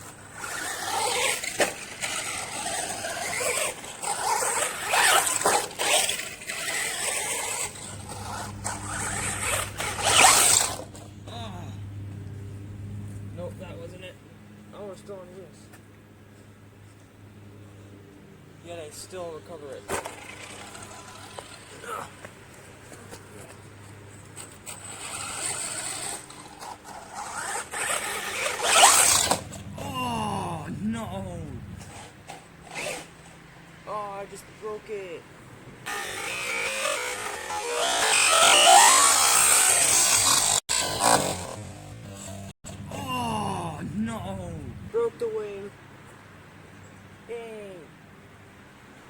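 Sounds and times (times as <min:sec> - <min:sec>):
electric motor whining: 0:00.0 - 0:11.2, 0:24.4 - 0:30.2, 0:35.9 - 0:43.0
tyres scrabbling on dirt: 0:00.0 - 0:11.2, 0:19.7 - 0:29.8, 0:35.8 - 0:42.9.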